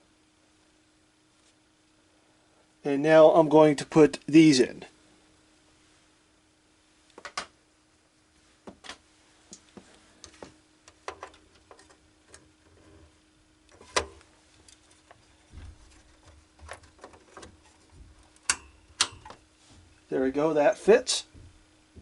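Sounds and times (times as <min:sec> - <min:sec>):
slot latches snapping shut: 0:18.4 - 0:19.4.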